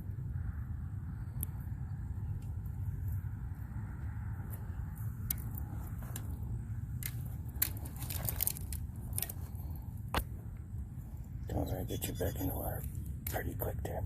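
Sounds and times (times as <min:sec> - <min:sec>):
steady low rumble: 0:00.0 - 0:14.0
handling clicks and crackles: 0:04.4 - 0:10.7.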